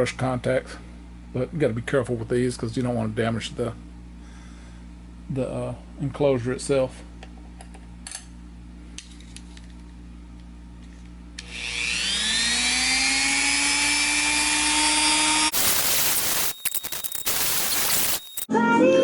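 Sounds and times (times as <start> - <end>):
rotary tool whining: 11.4 - 18.5.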